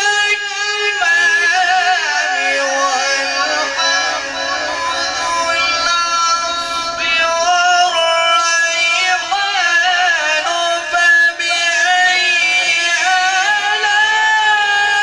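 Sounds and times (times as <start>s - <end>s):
man reciting in melodic sung style: 0.0s - 15.0s.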